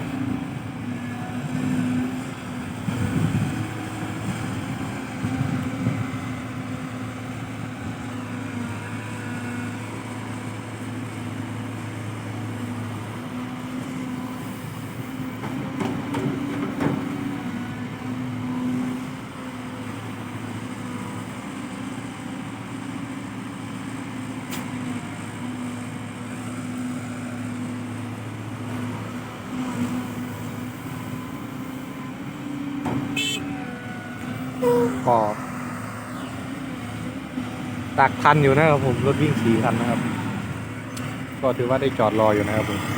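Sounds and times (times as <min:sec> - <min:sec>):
heavy diesel engine running: 0:26.0 - 0:42.9.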